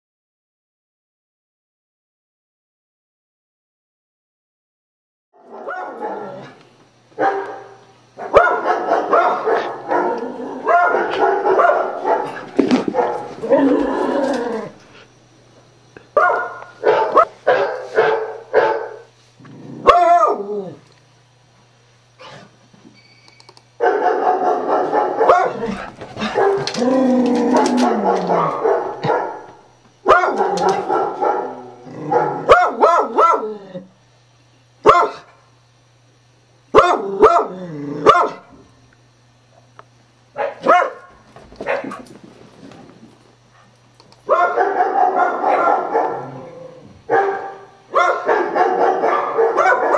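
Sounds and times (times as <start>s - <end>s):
dog barking: 5.4s - 6.5s, 7.2s - 13.4s, 16.2s - 19.1s, 19.8s - 20.4s, 23.8s - 26.8s, 27.6s - 33.5s, 34.8s - 35.3s, 36.7s - 38.5s, 40.4s - 42.0s, 44.3s - 46.4s, 47.1s - 49.9s
steady low hum: 5.4s - 49.9s.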